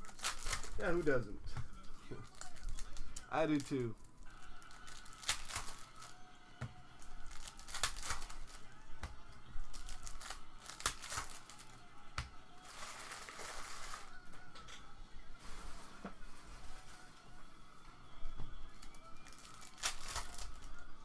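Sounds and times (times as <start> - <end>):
cards clicking and snapping: 0.0 - 0.8, 4.7 - 6.2, 7.0 - 12.3, 18.8 - 20.8
wrappers crinkling and tearing: 0.0 - 1.2, 2.2 - 6.2, 7.0 - 8.8, 9.6 - 11.8, 12.6 - 14.2, 18.7 - 20.9.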